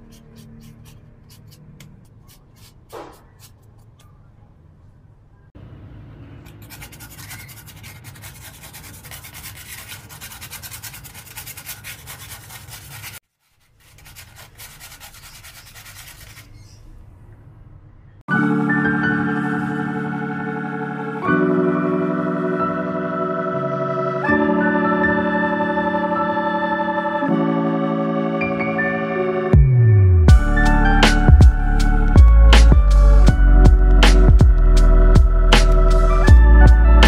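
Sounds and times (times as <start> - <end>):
rubbing styrofoam by hand: 6.6 - 16.8
short squeak: 16.2 - 17.0.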